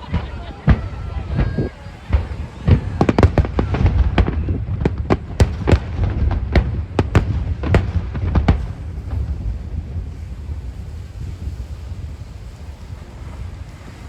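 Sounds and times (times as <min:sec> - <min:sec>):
echoing booms: 0:00.0 - 0:10.8
fireworks bursting: 0:00.0 - 0:14.0.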